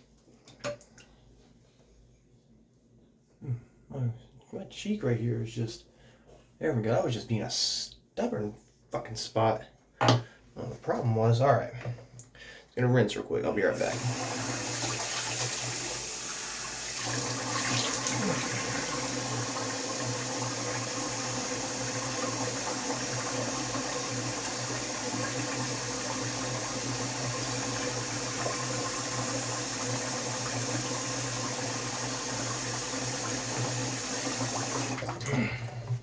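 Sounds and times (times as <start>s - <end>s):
faucet running into a sink: 13.8s - 35.8s.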